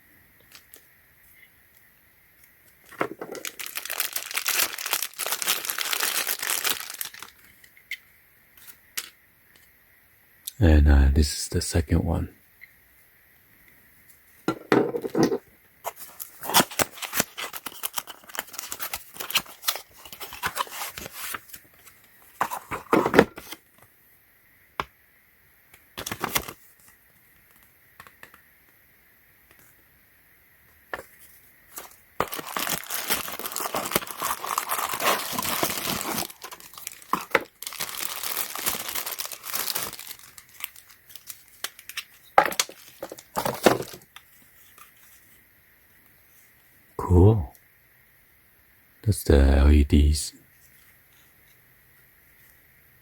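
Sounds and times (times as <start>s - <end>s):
packaging crinkling and tearing: 2.9s - 7.7s, 15.9s - 21.9s, 26.0s - 26.7s, 31.8s - 45.2s.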